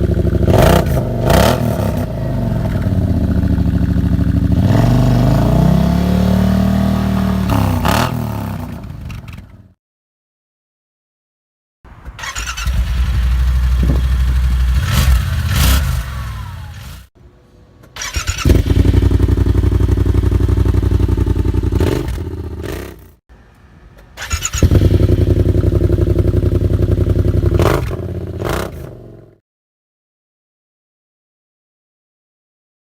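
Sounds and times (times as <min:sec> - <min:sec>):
engine and exhaust revving: 0:00.0 - 0:09.6, 0:12.1 - 0:17.1, 0:18.0 - 0:23.2, 0:24.2 - 0:29.4.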